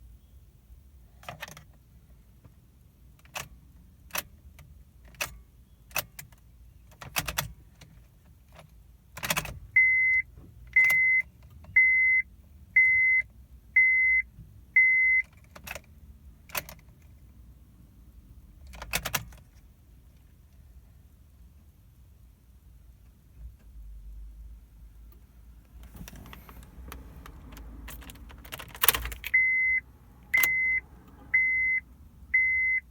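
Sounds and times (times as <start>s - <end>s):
high warning chime beeping: 9.8s - 10.2s, 29.3s - 31.8s, 32.4s - 32.9s
car keys jangling: 25.8s - 29.6s.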